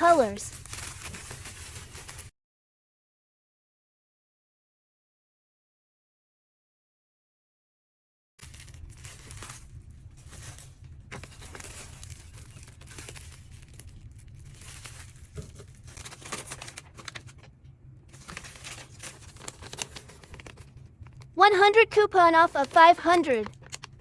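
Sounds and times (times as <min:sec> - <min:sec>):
packaging crinkling and tearing: 0:00.0 - 0:02.3, 0:08.4 - 0:17.5, 0:18.1 - 0:21.3, 0:22.4 - 0:24.0.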